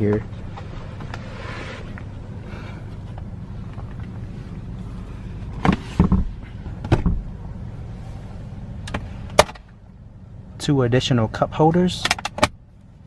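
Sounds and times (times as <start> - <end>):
low background rumble: 0.0 - 13.0
car interior fittings clunking: 5.4 - 7.4.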